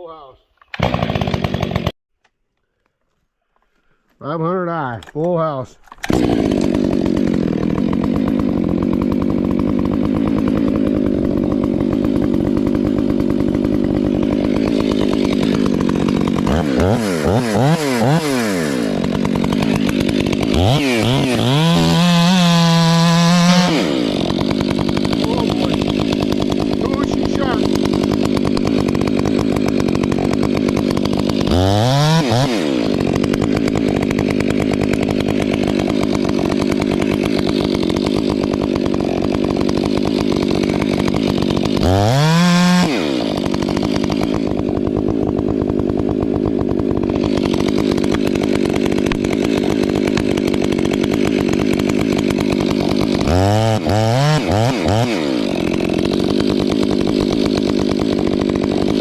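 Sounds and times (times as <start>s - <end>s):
chainsaw cutting wood: 0.6s - 4.2s, 5.0s - 59.0s.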